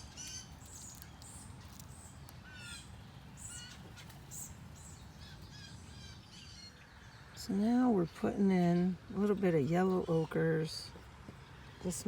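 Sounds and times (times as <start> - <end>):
harsh short bird calls: 0.0 - 7.3
high chirping of small birds: 0.0 - 12.0.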